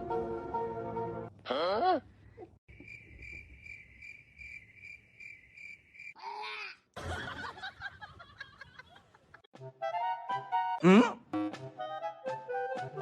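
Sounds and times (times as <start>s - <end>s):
cricket chirping: 2.7s - 6.2s.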